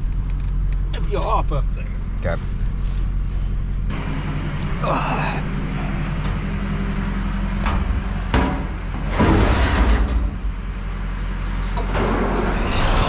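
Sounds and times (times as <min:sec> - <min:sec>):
tractor engine idling: 0:00.0 - 0:09.2, 0:10.1 - 0:13.0
loud hissing rush: 0:12.4 - 0:13.0.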